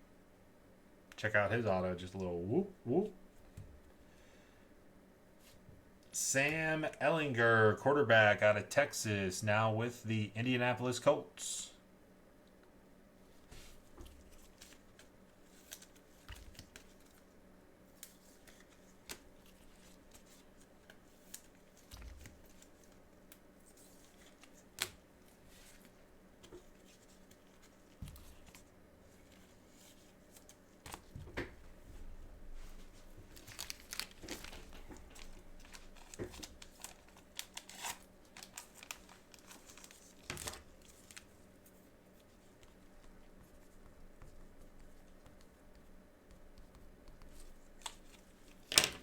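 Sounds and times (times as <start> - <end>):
cards being handled: 18.0 - 31.2
wrapper crinkling and tearing: 33.3 - 41.3.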